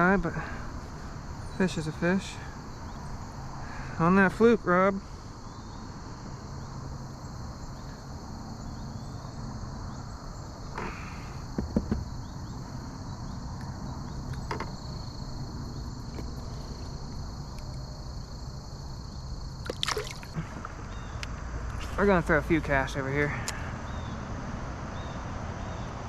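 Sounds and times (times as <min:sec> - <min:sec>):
high-pitched insect chorus: 0:00.0 - 0:26.0
short knocks: 0:11.6 - 0:12.1.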